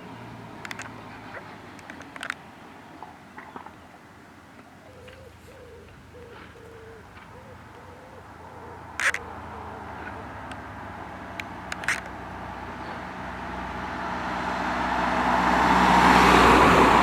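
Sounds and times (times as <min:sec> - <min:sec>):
pigeon cooing: 0:04.8 - 0:13.1.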